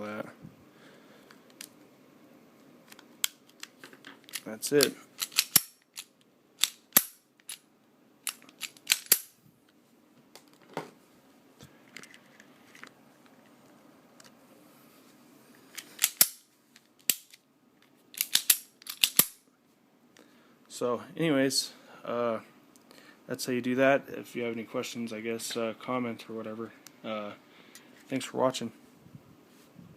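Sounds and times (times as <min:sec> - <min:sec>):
pistol metallic clicks: 0:04.3 - 0:07.6, 0:08.2 - 0:09.3, 0:16.0 - 0:16.4, 0:18.2 - 0:19.4.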